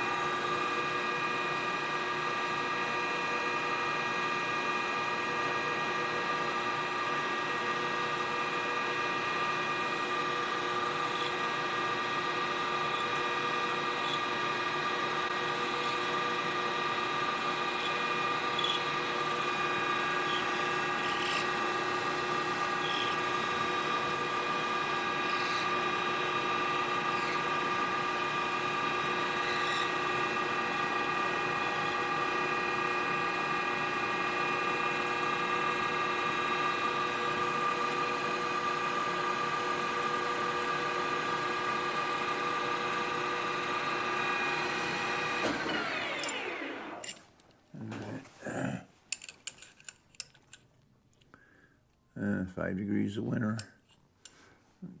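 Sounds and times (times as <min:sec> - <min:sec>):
lathe motor whining: 0:00.0 - 0:47.2
clicks and knocks of metal parts: 0:49.1 - 0:51.3.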